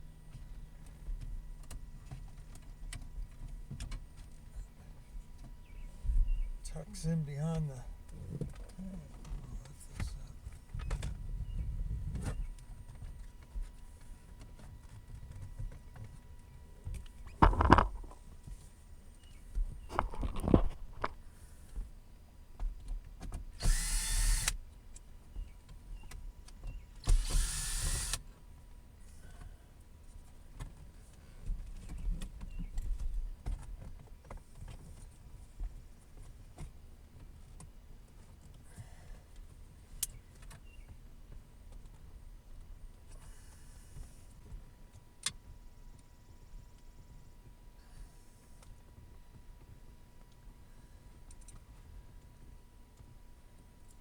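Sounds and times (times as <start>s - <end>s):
cordless power screwdriver: 23.6s - 24.6s, 27.0s - 28.2s.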